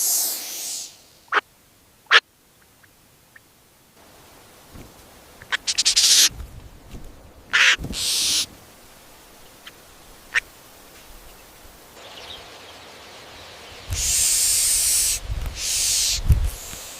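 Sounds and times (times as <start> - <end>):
harsh raspy animal squawks: 7.5 - 8.4.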